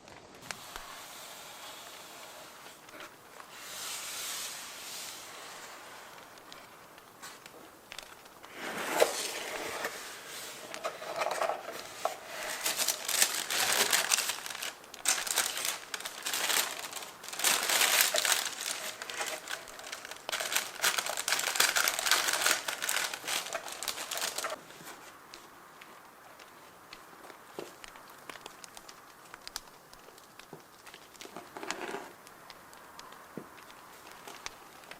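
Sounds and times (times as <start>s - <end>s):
paper crinkling and rustling: 0.0s - 34.9s.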